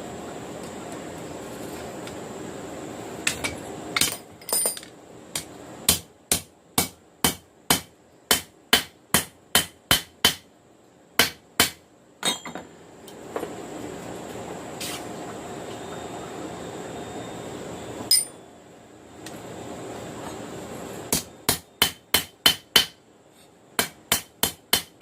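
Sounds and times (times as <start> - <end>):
hammer striking steel on anvil: 5.4 - 10.4, 18.1 - 18.4, 21.1 - 23.0, 23.8 - 25.0.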